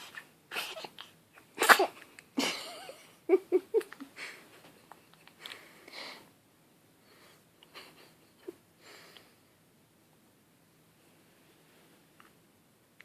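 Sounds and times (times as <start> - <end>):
baby sneezing: 0.0 - 2.0
baby vocal sounds: 0.0 - 2.0.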